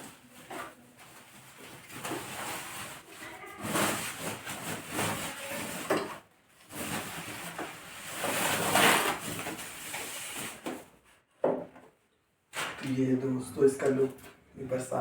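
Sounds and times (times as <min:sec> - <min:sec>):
packaging rustling and sliding: 0:00.0 - 0:10.9.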